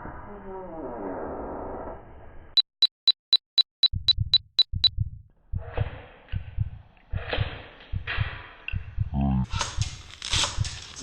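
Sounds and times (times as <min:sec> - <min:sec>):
short high electronic beeps: 0:02.6 - 0:04.9
dull low thumps: 0:02.8 - 0:05.3, 0:07.9 - 0:09.2.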